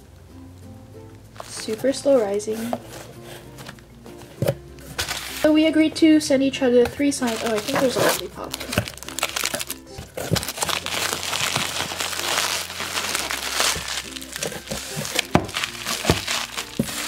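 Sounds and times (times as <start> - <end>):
background music: 0.0 - 17.0
packaging crinkling: 1.4 - 3.8, 5.0 - 5.5, 7.2 - 17.0.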